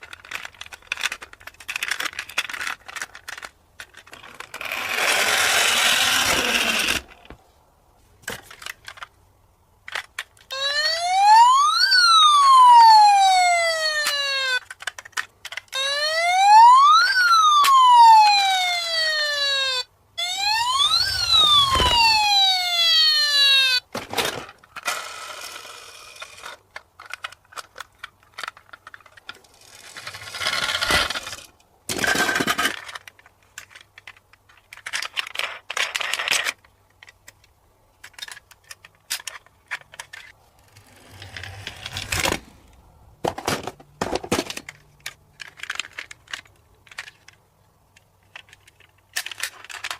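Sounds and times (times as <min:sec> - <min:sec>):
toy siren wailing: 0:10.5 - 0:14.7, 0:15.7 - 0:23.9.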